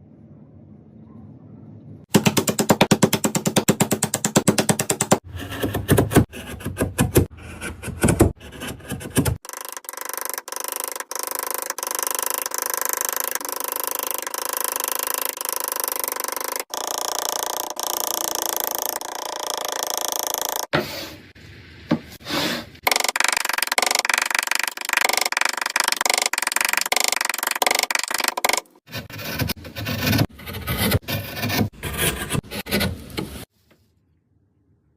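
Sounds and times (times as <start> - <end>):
rubbing sound: 22.2 - 33.7.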